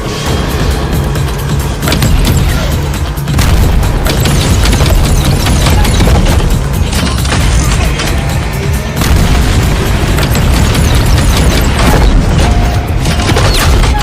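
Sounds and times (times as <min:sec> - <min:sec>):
dramatic soundtrack music: 0:00.0 - 0:14.0
heavy booms and blasts: 0:01.8 - 0:07.7, 0:09.0 - 0:14.0.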